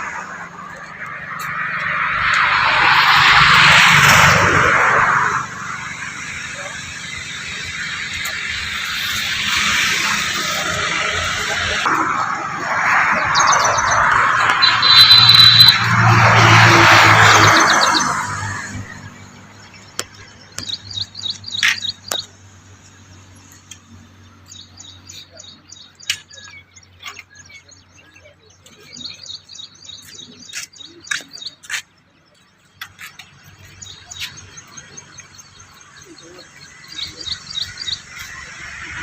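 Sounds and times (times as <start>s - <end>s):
small birds chirping: 13.1s - 15.8s, 17.3s - 39.0s.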